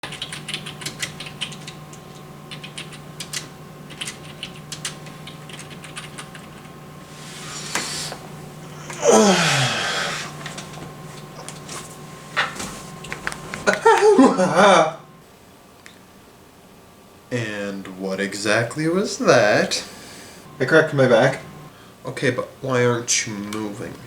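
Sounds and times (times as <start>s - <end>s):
computer keyboard typing: 0.0s - 6.8s.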